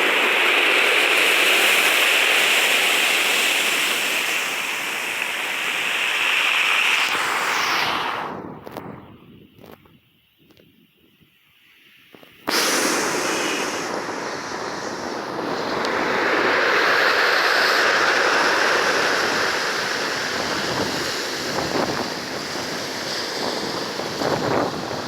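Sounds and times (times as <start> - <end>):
crackling fizz of surf: 0.0 - 25.0
ocean waves breaking: 12.5 - 25.0.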